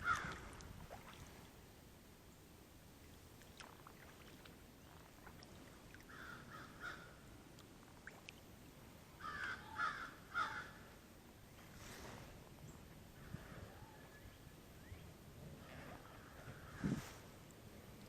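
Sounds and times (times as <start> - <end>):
crows cawing: 0.0 - 0.4, 6.1 - 7.2, 9.2 - 10.8.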